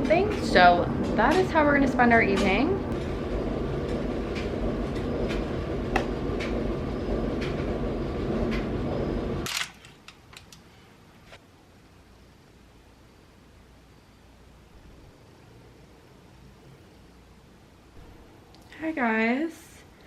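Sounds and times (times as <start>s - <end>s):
steady rushing noise: 0.0s - 9.5s
faint steady hiss: 10.0s - 20.0s.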